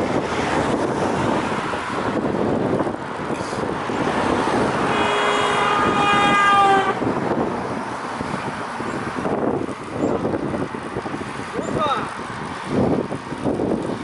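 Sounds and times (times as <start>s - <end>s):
road traffic: 0.0s - 14.0s
wind noise: 0.0s - 14.0s
vehicle horn: 4.8s - 7.0s.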